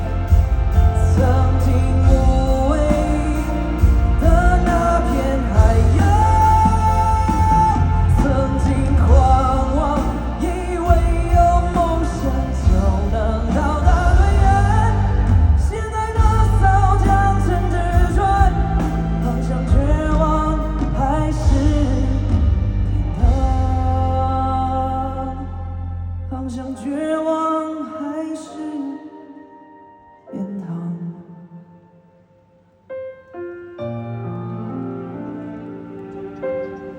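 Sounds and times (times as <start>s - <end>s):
pop-rock band playing: 0.0s - 27.4s.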